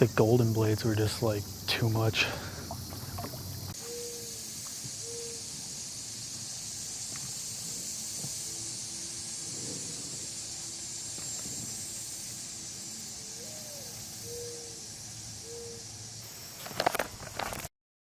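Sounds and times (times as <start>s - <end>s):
outdoor ambience hiss: 0.0s - 17.7s.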